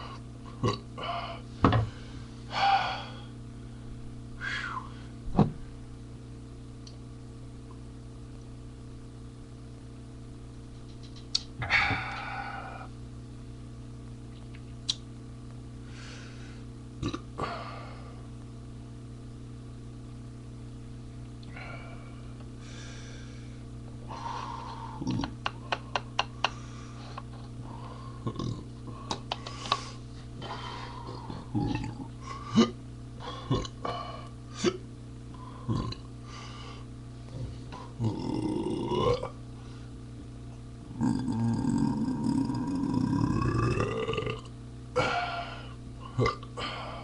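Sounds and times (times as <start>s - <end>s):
steady low hum: 0.0s - 47.0s
man burping: 0.6s - 1.2s, 17.0s - 17.6s, 24.9s - 25.4s, 28.2s - 28.7s, 31.3s - 34.9s, 35.7s - 36.1s, 37.7s - 39.4s, 40.9s - 46.8s.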